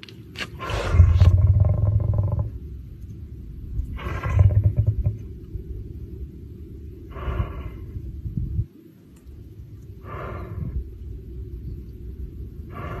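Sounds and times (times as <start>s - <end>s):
low rumble: 0.0s - 13.0s
lion breathing out in puffs: 0.5s - 1.4s, 7.0s - 8.1s, 9.9s - 10.9s, 12.6s - 13.0s.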